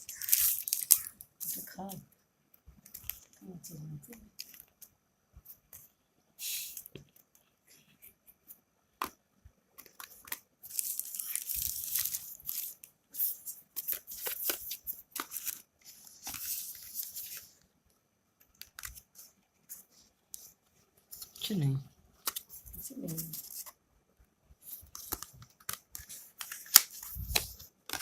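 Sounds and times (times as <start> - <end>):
packaging tearing and crinkling: 0.1 - 1.1, 9.9 - 12.8, 24.9 - 28.0.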